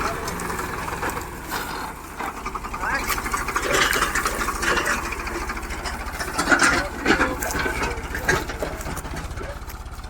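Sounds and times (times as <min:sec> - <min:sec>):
tractor diesel engine running: 0:00.0 - 0:10.0
mechanical clatter and knocks: 0:02.2 - 0:10.0.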